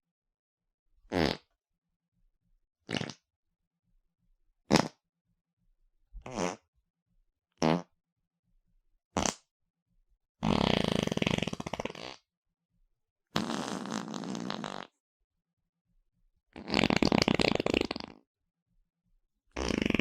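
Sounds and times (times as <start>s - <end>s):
long fluttering fart: 1.1s - 1.5s, 2.8s - 3.2s, 4.7s - 5.0s, 6.2s - 6.7s, 7.6s - 7.9s, 9.2s - 9.5s, 10.4s - 12.3s, 13.4s - 15.0s, 16.6s - 18.2s, 19.6s - 20.0s
short farts: 1.1s - 1.5s, 2.9s - 3.2s, 4.7s - 5.0s, 6.2s - 6.6s, 7.6s - 7.9s, 9.2s - 9.5s, 10.4s - 12.2s, 13.4s - 15.0s, 16.6s - 18.2s, 19.6s - 20.0s.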